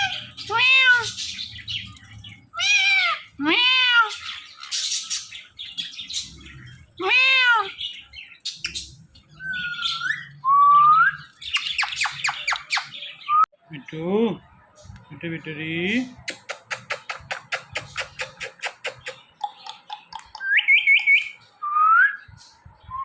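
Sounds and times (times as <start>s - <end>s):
parrot scratchy chatter: 0.0s - 5.5s, 16.4s - 20.5s
parrot mimicking cat meow: 2.6s - 4.2s, 7.0s - 7.8s.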